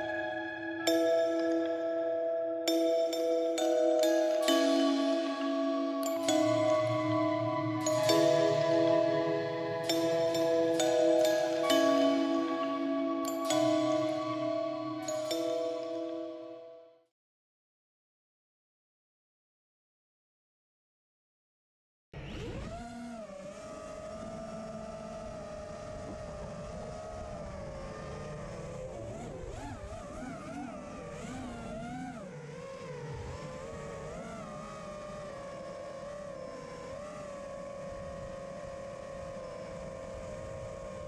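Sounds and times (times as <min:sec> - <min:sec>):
drone motors whining: 0:22.2 - 0:41.0.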